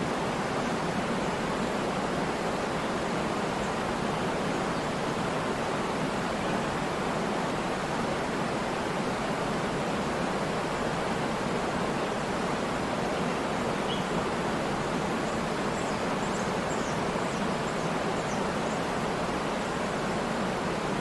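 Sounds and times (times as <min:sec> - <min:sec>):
waterfall rushing: 0:00.0 - 0:21.0.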